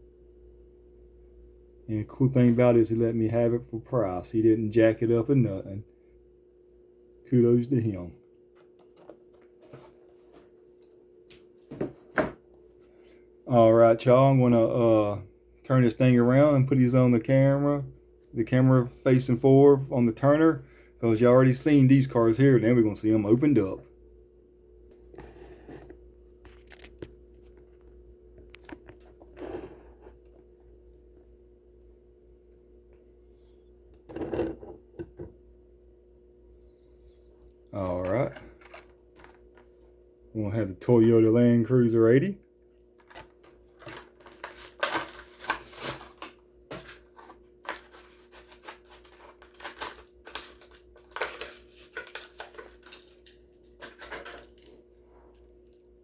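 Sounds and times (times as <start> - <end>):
faint steady hum: 0.0 - 56.0
plastic packaging torn open: 47.6 - 54.7.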